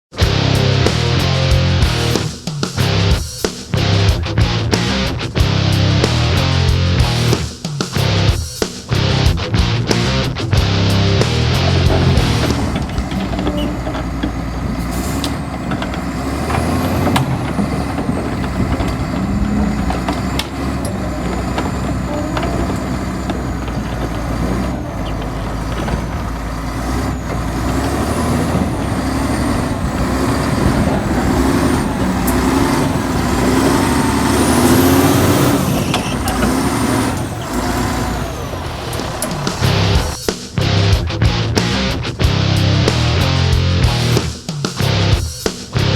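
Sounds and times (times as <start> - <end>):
diesel engine drone: 0.0 - 3.2, 3.8 - 7.4, 8.0 - 45.9
high metallic squeals: 11.8 - 40.2.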